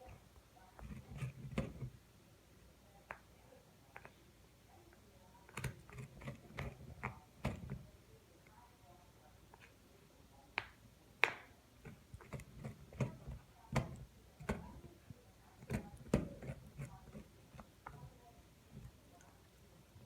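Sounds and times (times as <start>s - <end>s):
puppy gnawing on antler: 5.5s - 7.9s, 11.8s - 15.0s, 15.6s - 19.1s.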